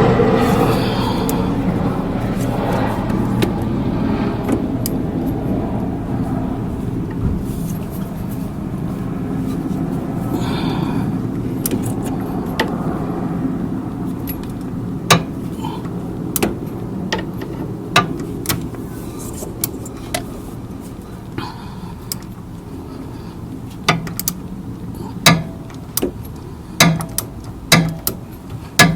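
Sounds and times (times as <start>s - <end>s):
car engine idling: 0.0s - 28.9s.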